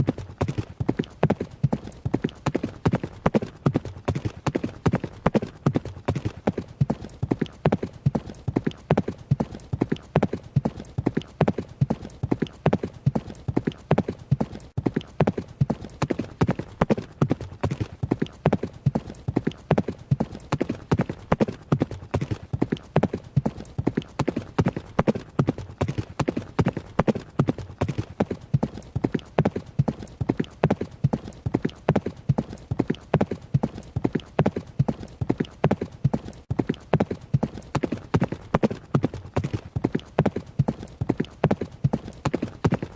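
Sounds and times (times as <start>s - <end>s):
horse hoofbeats running: 0.0s - 42.9s.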